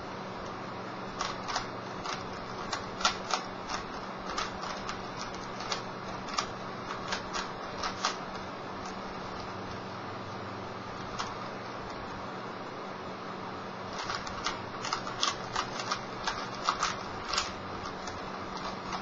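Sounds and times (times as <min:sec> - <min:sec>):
steady low hum: 0:00.0 - 0:19.0
plastic puzzle cube clicking: 0:01.2 - 0:08.2, 0:13.9 - 0:19.0.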